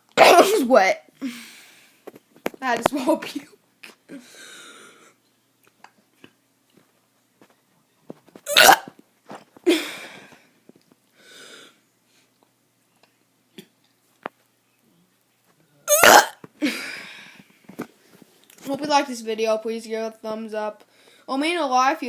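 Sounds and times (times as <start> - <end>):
boy burping: 8.5 - 8.9, 15.9 - 16.8.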